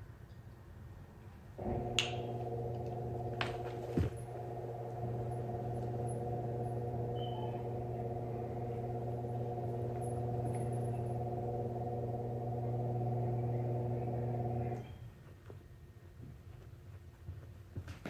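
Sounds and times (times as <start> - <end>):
low machine hum: 1.6 - 15.1.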